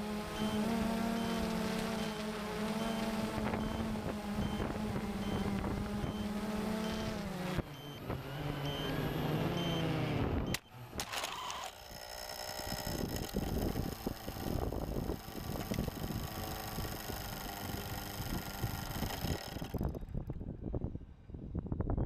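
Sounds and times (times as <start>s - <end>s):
drone motors humming: 0.0s - 21.0s
wind noise: 3.0s - 8.4s, 12.7s - 22.0s.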